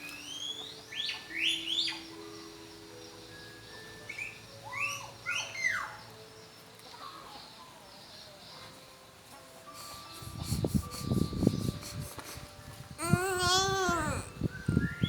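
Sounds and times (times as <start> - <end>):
bird chirping: 0.0 - 8.8.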